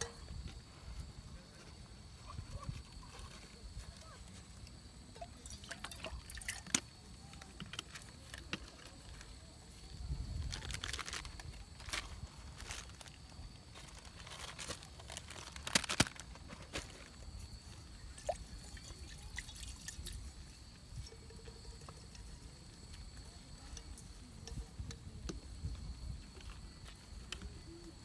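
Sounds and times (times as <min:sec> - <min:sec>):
water dripping and trickling: 0:05.2 - 0:06.8, 0:18.1 - 0:20.4.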